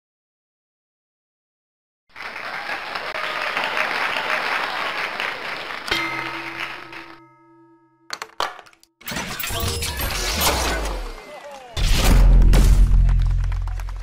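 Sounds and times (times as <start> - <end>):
applause: 2.1 - 7.2, 12.9 - 14.0
sustained musical chord: 5.9 - 8.1.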